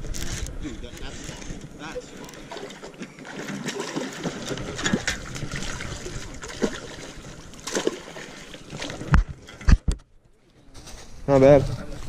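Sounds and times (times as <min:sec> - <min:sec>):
water splashing and trickling: 0:00.1 - 0:09.7.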